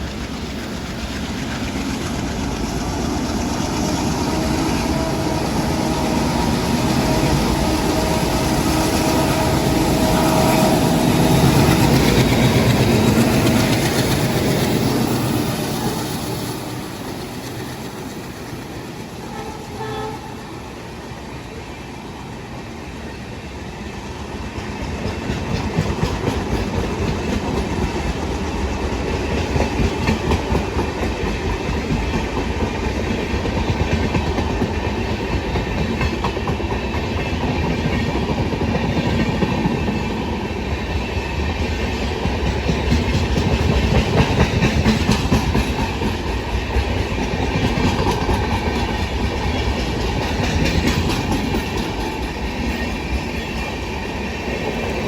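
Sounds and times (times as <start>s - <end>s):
diesel locomotive engines: 0.0s - 55.0s
train wheels clicking on rails: 0.0s - 55.0s.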